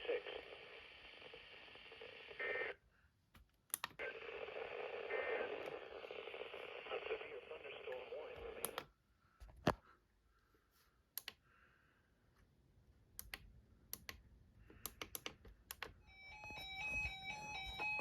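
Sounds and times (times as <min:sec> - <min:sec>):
simple electronic tune: 0:16.1 - 0:18.0.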